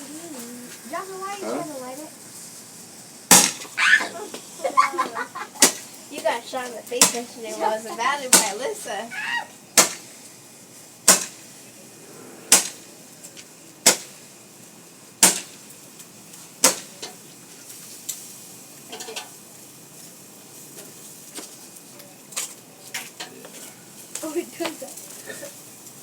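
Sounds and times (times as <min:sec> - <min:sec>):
roman candle pops: 0:03.3 - 0:03.8, 0:09.8 - 0:10.1, 0:12.5 - 0:12.8.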